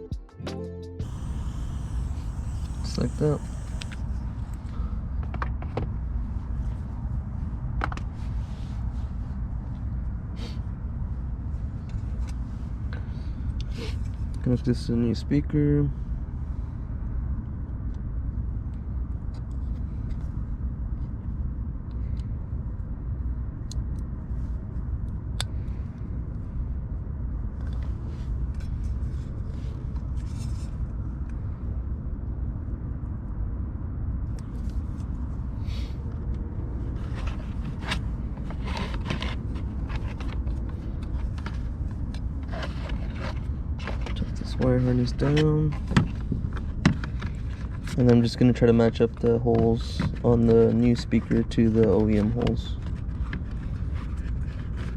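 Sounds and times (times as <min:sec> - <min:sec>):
hands connecting wires: 0:01.0 - 0:04.1
steady low rumble: 0:01.0 - 0:54.9.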